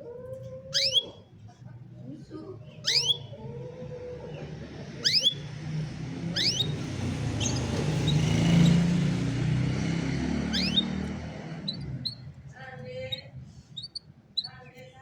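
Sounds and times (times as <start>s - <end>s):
canary chirping: 0.7s - 1.3s, 2.5s - 15.0s
vehicle passing by: 3.3s - 14.0s.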